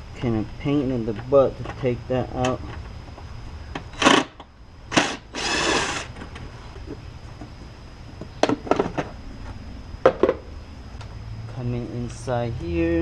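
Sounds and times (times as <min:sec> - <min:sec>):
small power tool whirring: 0:03.9 - 0:06.1.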